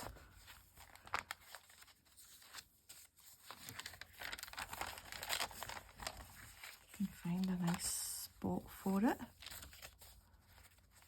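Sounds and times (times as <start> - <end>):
paper rustling and crinkling: 0.0 - 11.0.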